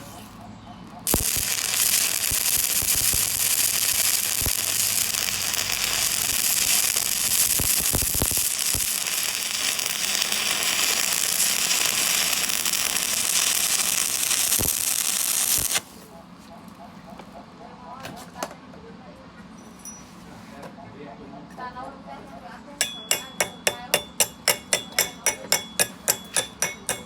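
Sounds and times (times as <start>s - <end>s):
welding arc crackling hiss: 1.1s - 15.9s, 22.9s - 27.0s.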